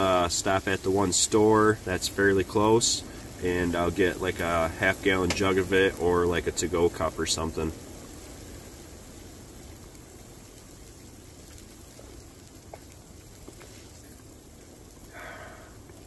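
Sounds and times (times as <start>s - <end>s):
blizzard wind against tent: 0.0s - 16.0s
faint ticks: 11.4s - 16.0s.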